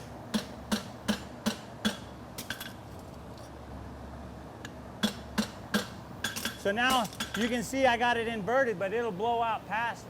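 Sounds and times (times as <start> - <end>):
hammer striking metal on anvil: 0.0 - 2.6, 5.0 - 7.5
cooler fan humming: 0.0 - 10.0.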